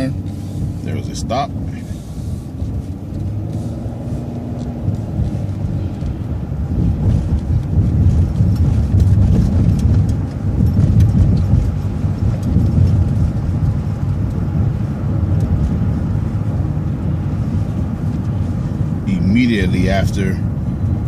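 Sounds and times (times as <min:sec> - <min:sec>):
bus rumbling inside cabin: 0:00.0 - 0:21.0
light rattles and clicks: 0:06.9 - 0:16.2.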